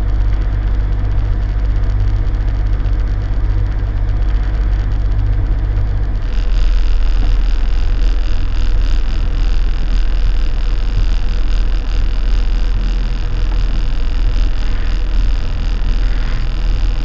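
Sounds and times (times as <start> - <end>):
boat engine rumbling: 0.0 - 17.0.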